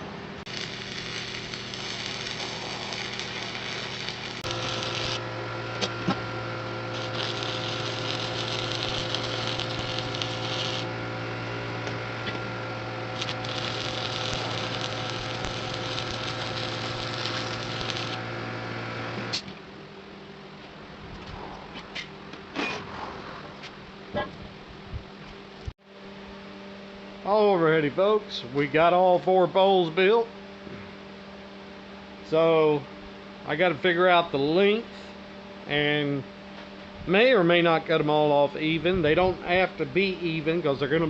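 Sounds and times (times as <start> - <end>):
small motor humming: 0.5 - 18.4
hissing: 13.1 - 18.2.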